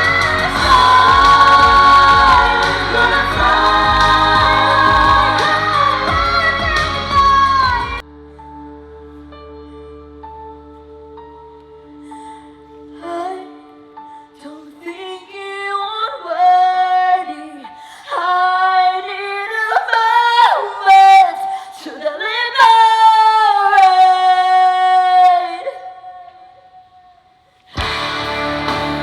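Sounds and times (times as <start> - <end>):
woman singing: 0.0 - 8.0, 11.9 - 26.6.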